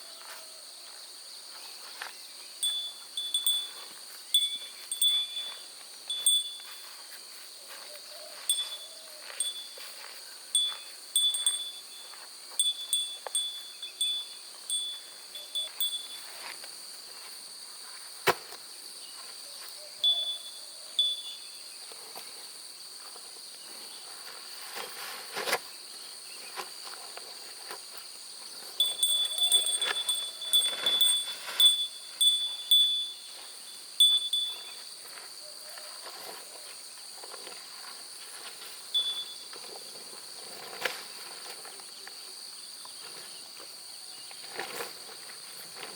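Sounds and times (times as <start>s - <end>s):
high insect drone: 0.0s - 45.9s
short high chirping calls: 2.5s - 6.9s, 7.7s - 16.4s, 19.8s - 21.7s, 28.8s - 34.8s.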